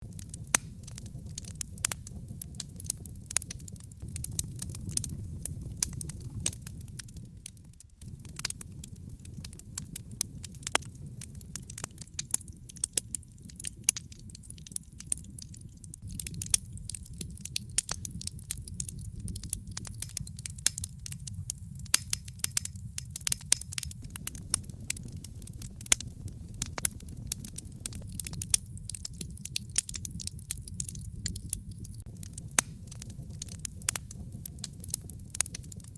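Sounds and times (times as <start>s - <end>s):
wood fire crackling: 0.0s - 35.9s
low rumble: 4.0s - 7.5s, 16.0s - 21.8s, 23.2s - 35.0s.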